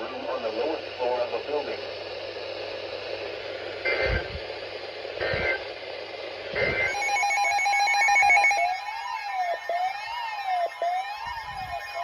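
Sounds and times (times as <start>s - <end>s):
radio static hiss: 0.0s - 7.1s
alert data bursts: 6.6s - 12.0s
rapidly pulsing electronic alert tone: 6.6s - 12.0s.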